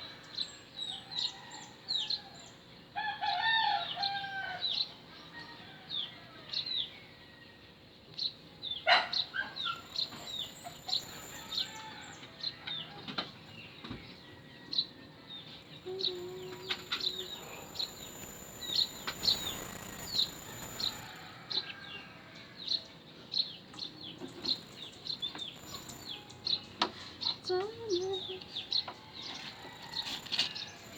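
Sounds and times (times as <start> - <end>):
birds chirping: 8.3 - 14.0, 15.3 - 21.4, 23.8 - 30.9.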